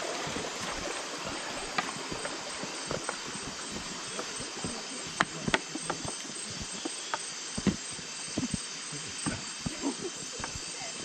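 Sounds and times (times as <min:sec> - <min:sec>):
insect hiss: 0:00.0 - 0:11.0
sharp clicks and knocks: 0:01.7 - 0:09.8.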